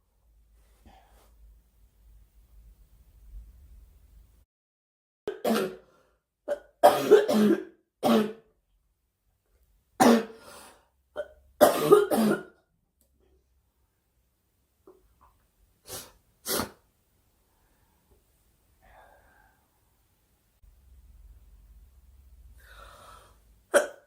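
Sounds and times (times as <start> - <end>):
girl coughing: 5.3 - 5.8, 6.5 - 8.4, 10.0 - 10.4, 11.6 - 12.5.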